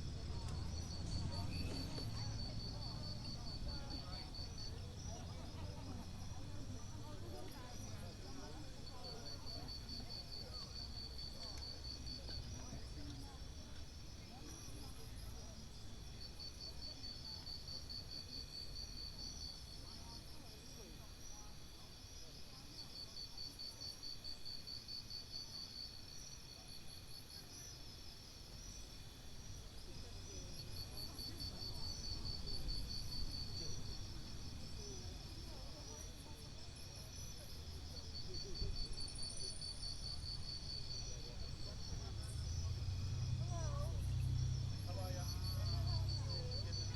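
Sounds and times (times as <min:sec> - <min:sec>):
high-pitched insect chorus: 0:21.1 - 0:46.9
pulsed insect trill: 0:30.6 - 0:46.9.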